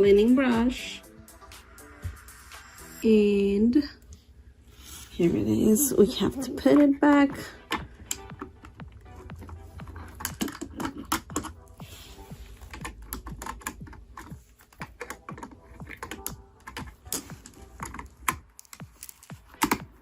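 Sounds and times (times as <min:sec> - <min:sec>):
plastic clicks and knocks: 0:09.4 - 0:11.5.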